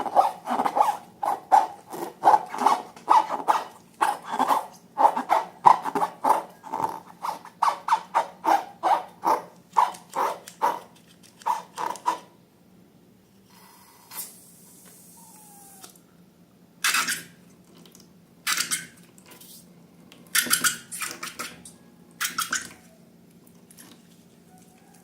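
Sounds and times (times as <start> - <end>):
rubber balloons squeaking: 0.0 - 10.4.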